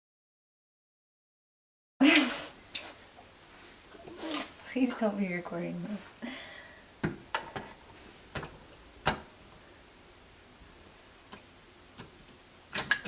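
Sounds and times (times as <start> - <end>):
metal hardware clicking: 12.0 - 13.0.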